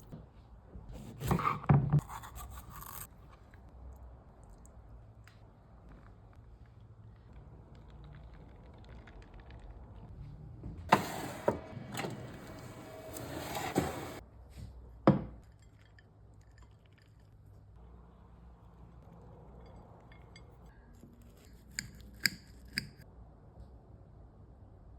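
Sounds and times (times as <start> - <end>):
utensils and dishes clinking: 10.9 - 14.2.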